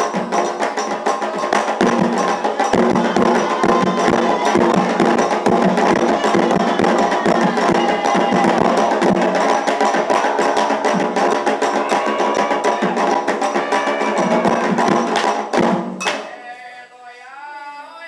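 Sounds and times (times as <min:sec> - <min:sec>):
hand drums playing fast rhythm: 0:00.0 - 0:16.2
clacking struck percussion: 0:00.0 - 0:16.3.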